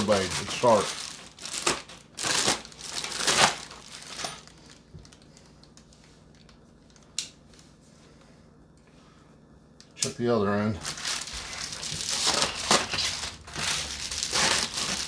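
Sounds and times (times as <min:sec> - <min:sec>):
material crinkling and tearing: 0:00.0 - 0:06.4, 0:10.8 - 0:15.0.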